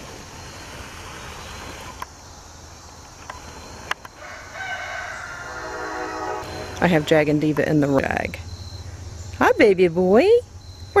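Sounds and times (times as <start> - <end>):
crickets chirring: 0.0 - 11.0
rooster crowing: 4.2 - 6.8.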